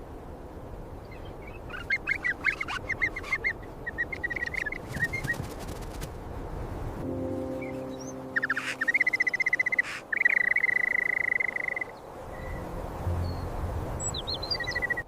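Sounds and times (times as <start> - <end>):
birds chirping: 0.9 - 5.6, 7.0 - 15.0
steady low multi-tone hum: 6.2 - 15.0
low rumbling background: 12.0 - 15.0.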